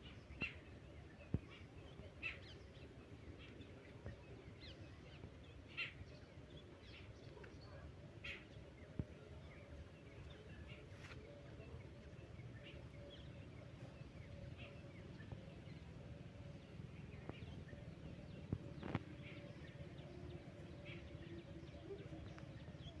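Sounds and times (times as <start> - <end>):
lovebirds chirping: 9.4 - 23.0
low background rumble: 12.1 - 23.0.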